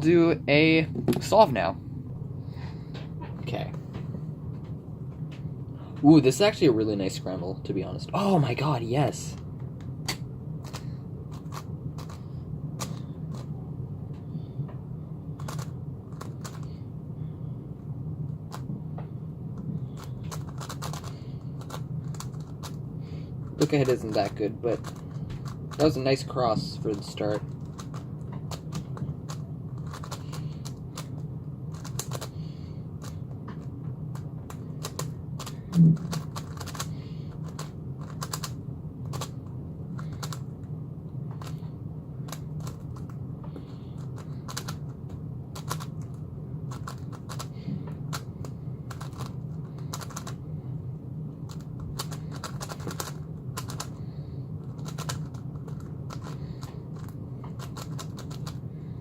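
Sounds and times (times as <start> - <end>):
steady low hum: 0.0 - 59.0
puzzle cube plastic clicking: 10.1 - 12.2, 15.4 - 16.7, 20.0 - 22.8, 27.0 - 32.3, 33.0 - 39.4, 40.0 - 40.4, 44.0 - 44.8, 45.6 - 50.4, 51.5 - 54.0, 54.7 - 58.6.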